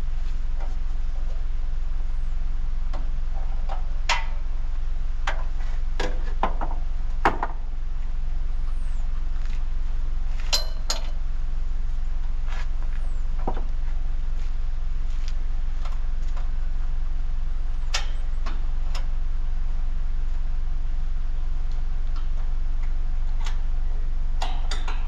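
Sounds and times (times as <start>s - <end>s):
engine running with low hum: 0.0s - 25.0s
clunks and metallic clinks: 10.5s - 11.2s.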